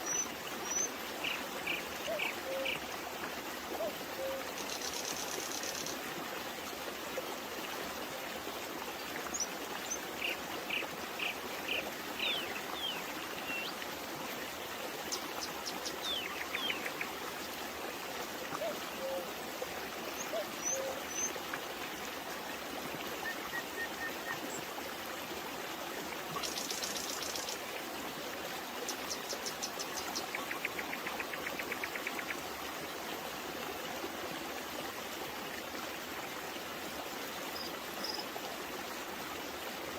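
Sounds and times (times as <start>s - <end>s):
songbirds calling and trilling: 0.0s - 2.8s, 9.3s - 13.8s, 15.1s - 17.2s, 20.2s - 21.4s, 28.8s - 32.4s
babbling brook: 0.0s - 39.9s.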